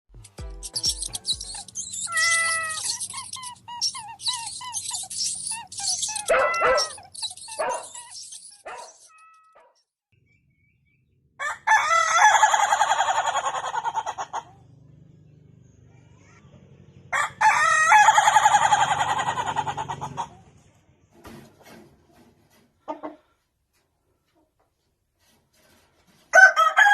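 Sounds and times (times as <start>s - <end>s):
high-pitched bird chirping: 0.2s - 9.6s
chickens calling: 0.3s - 9.2s, 11.4s - 14.7s, 17.2s - 20.7s
rooster crowing: 1.0s - 3.2s, 11.4s - 14.4s, 17.1s - 20.3s, 26.3s - 26.9s.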